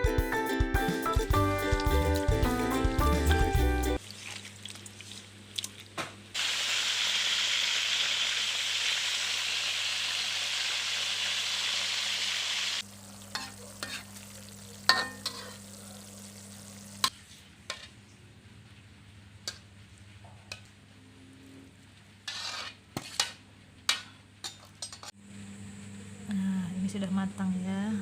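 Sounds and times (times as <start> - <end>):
food sizzling in hot oil: 6.4 - 17.1.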